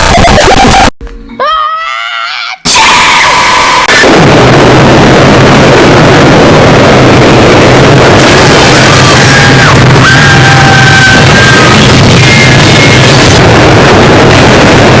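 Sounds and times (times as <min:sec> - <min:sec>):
loud distorted blast noise: 0:00.0 - 0:01.0, 0:02.7 - 0:15.0
low hum: 0:03.9 - 0:15.0.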